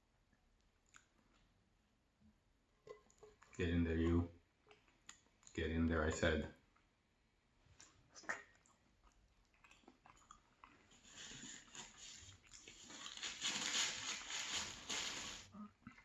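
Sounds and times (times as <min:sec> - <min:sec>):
chewing food close up: 0:00.6 - 0:01.6, 0:04.6 - 0:05.6, 0:07.8 - 0:14.3
wet mouth clicks: 0:07.8 - 0:12.8.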